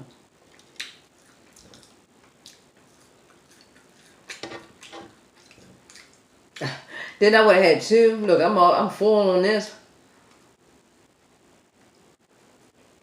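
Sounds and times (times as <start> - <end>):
mouth clicks and lip smacks chewing: 0.4 - 6.7.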